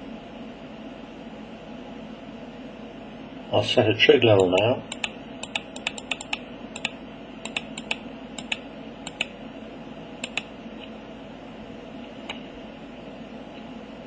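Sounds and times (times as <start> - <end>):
steady low hum: 0.0 - 14.0
typing on computer keyboard: 4.5 - 9.3.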